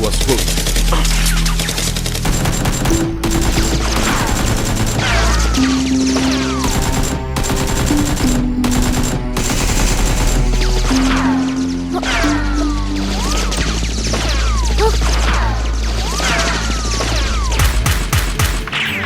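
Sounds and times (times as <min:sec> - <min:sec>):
action music with bass notes: 0:00.0 - 0:19.0
rapid machine-gun fire: 0:00.3 - 0:11.0, 0:16.0 - 0:18.9.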